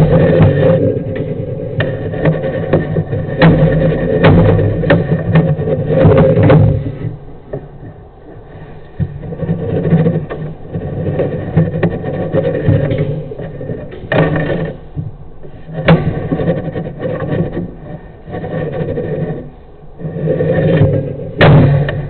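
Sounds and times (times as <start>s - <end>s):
sharp knocks: 0.0s - 6.9s, 20.7s - 22.0s
uneven rumbling in pipe: 0.0s - 22.0s.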